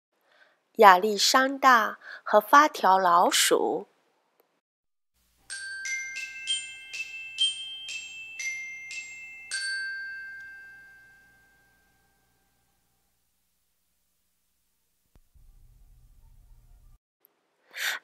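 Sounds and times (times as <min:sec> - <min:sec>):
bell-like jingle: 0:05.4 - 0:13.0.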